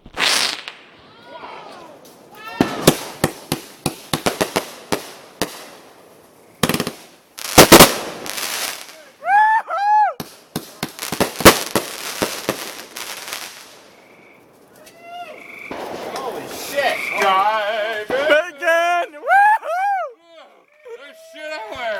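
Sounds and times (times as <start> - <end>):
firework cracks and bangs: 0.0 - 9.1, 10.2 - 14.1, 15.7 - 18.4
squealing firework tones: 0.0 - 18.6.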